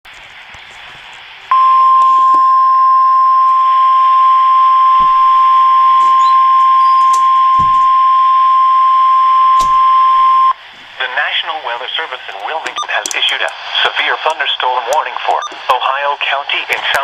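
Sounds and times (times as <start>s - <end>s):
radio static hiss: 0.1s - 4.1s, 5.0s - 17.0s
steady high alarm tone: 1.5s - 10.6s.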